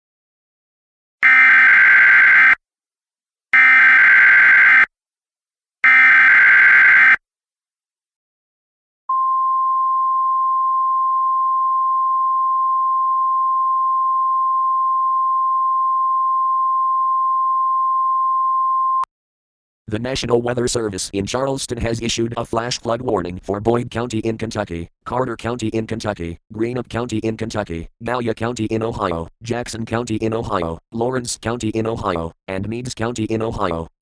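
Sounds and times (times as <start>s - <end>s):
steady warning tone: 3.6s - 4.9s, 5.8s - 7.2s.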